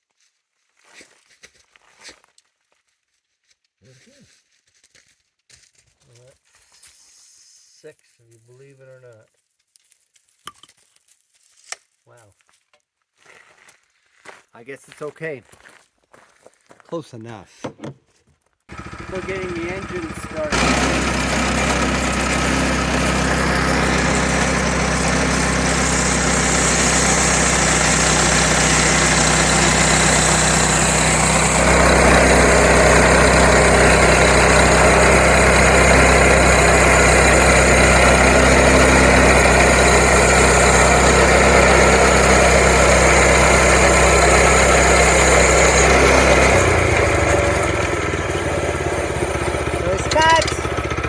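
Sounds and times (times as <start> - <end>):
gasoline engine running: 18.7 - 51.0.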